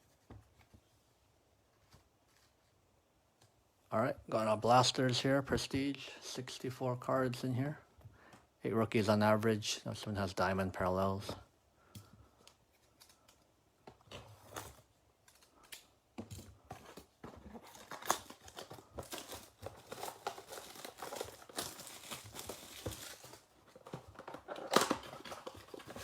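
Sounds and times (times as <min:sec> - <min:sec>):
plastic wrap crinkling and tearing: 0:17.5 - 0:26.0.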